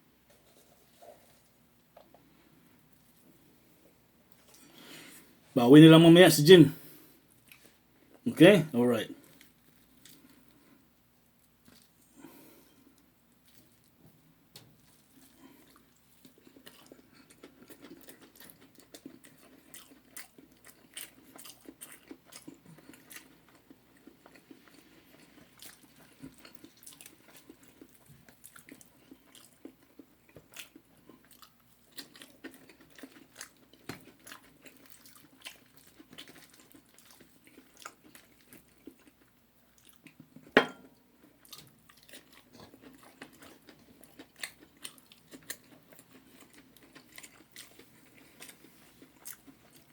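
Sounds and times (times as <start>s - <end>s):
chewing crispy fried chicken: 4.3s - 5.4s, 6.4s - 49.9s.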